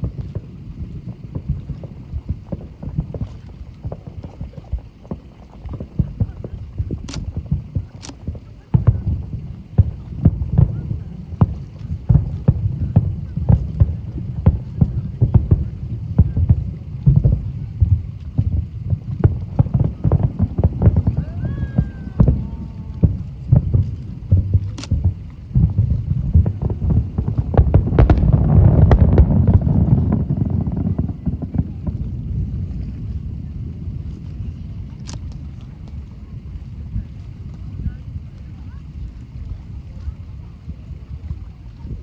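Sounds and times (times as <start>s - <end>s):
firework shells booming: 0.0s - 36.4s.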